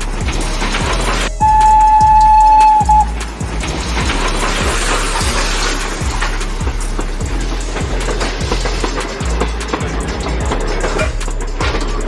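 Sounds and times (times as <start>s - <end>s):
background music with steady beat: 0.0s - 12.0s
held high synth tone: 1.3s - 3.2s.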